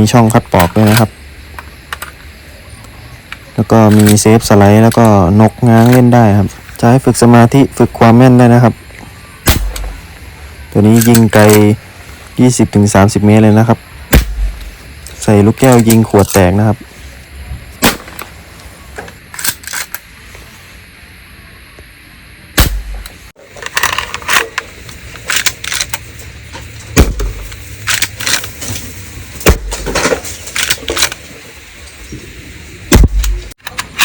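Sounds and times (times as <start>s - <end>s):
bb pistol shots: 9.4s - 10.0s, 14.1s - 14.7s, 17.8s - 18.2s, 22.6s - 23.1s, 27.0s - 27.5s, 29.4s - 30.2s, 32.9s - 33.5s
pistol handling clicks and rattles: 19.3s - 20.0s, 23.6s - 26.0s, 27.8s - 28.5s, 33.2s - 34.0s.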